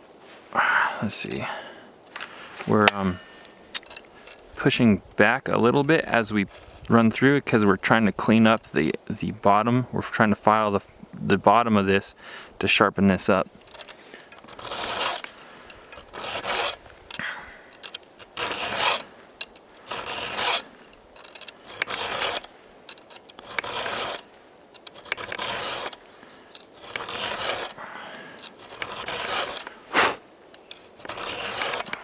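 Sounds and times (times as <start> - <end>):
file rasping on chainsaw chain: 13.6 - 16.8, 17.7 - 30.2, 31.0 - 32.0.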